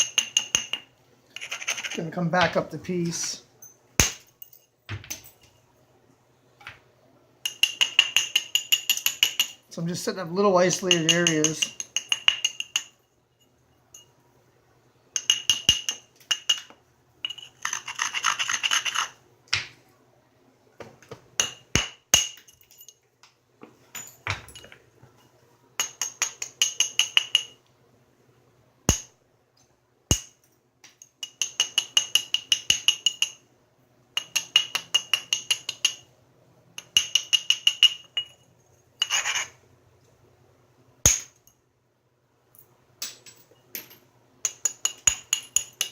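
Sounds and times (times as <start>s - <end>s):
stone clicking and scraping: 0.0s - 2.0s, 16.4s - 19.2s, 39.0s - 39.6s
stone glassy ring: 11.0s - 14.2s, 36.8s - 39.6s.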